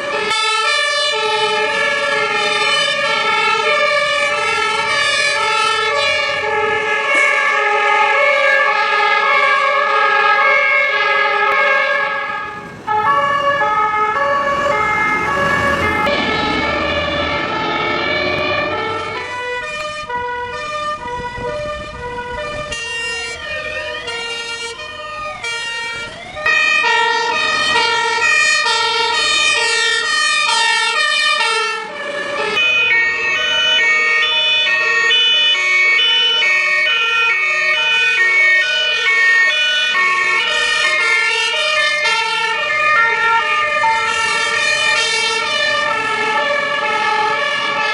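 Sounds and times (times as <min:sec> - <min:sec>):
engine and road rumble: 0:00.0 - 0:47.9
fire engine two-tone siren: 0:00.0 - 0:47.9
siren sweeping up and down: 0:00.0 - 0:47.9.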